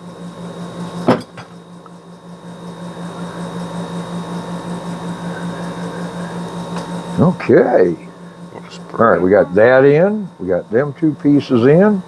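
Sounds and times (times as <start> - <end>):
low hum: 7.4 - 11.0.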